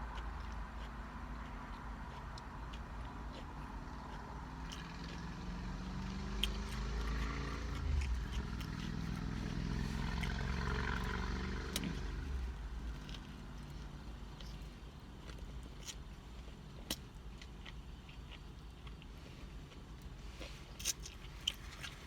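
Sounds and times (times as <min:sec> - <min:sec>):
low engine hum: 0:00.0 - 0:16.2
wet chewing: 0:00.0 - 0:22.0.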